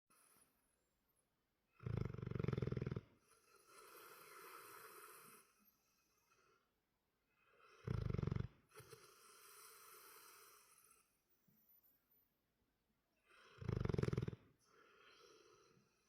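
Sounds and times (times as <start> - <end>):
loud buzzy snore: 1.8 - 5.6, 7.6 - 11.1, 13.2 - 16.0.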